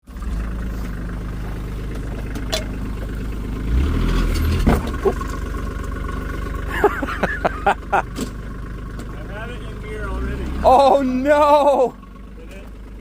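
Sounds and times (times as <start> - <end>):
skid steer engine running: 0.0 - 13.0
short clanks and squeaks: 4.2 - 5.4.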